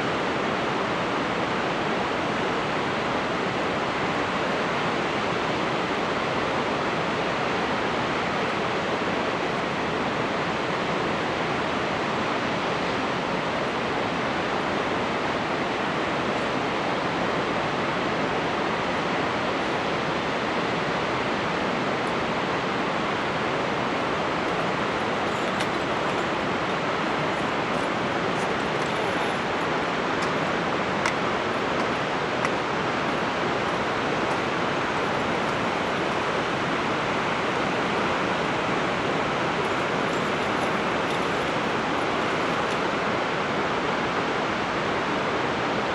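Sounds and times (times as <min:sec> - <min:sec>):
waterfall rushing: 0:21.9 - 0:43.2.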